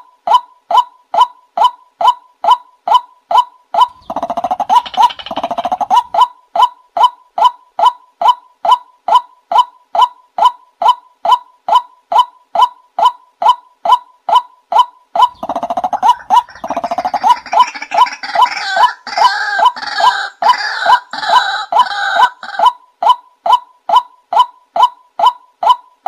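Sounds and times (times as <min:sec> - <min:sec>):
harsh rattling bird calls: 0:03.9 - 0:06.2, 0:15.3 - 0:22.6.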